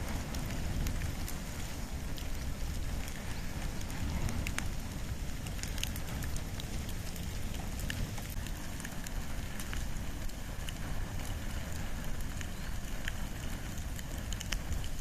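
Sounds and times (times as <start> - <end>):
bonfire crackling and popping: 0.0 - 15.0.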